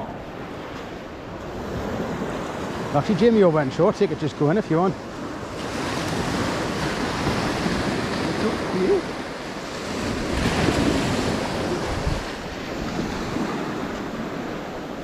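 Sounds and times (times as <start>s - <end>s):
sea waves breaking on shore: 0.0s - 15.0s
wind buffeting microphone: 5.1s - 15.0s.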